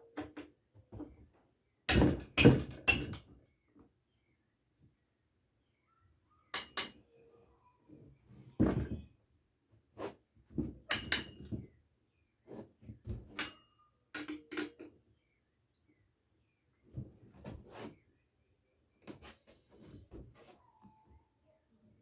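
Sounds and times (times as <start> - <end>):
metal tools clinking and knocking: 1.9 - 3.3, 10.9 - 11.6, 13.3 - 15.0.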